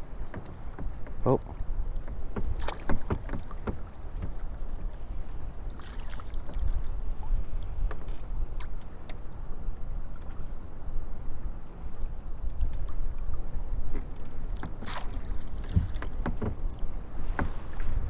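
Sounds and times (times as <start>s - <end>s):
water lapping and splashing: 0.0s - 18.0s
small clicks and knocks: 1.9s - 4.4s, 7.8s - 9.2s.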